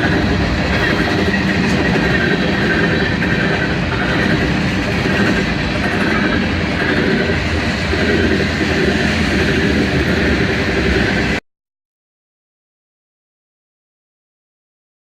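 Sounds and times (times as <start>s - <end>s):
train wheels rumbling on rails: 0.0s - 11.4s.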